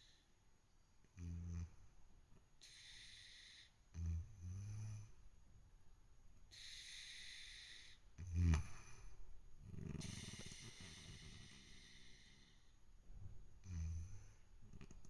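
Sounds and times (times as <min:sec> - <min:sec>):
soft hissy breaths: 0:00.0 - 0:05.5, 0:06.2 - 0:15.0
kitten snoring: 0:01.2 - 0:01.9, 0:02.6 - 0:05.2, 0:06.6 - 0:12.8, 0:13.6 - 0:15.0.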